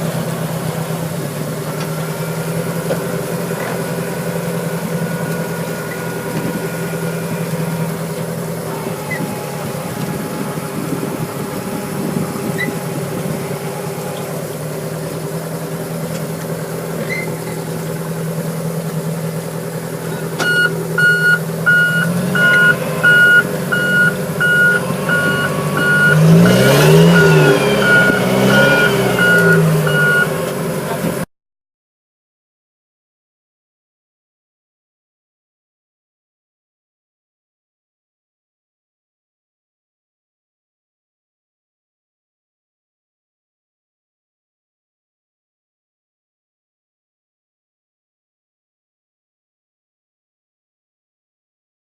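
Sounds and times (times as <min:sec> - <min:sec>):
engine running: 0:00.0 - 0:31.3
electronic beeps: 0:20.4 - 0:30.3.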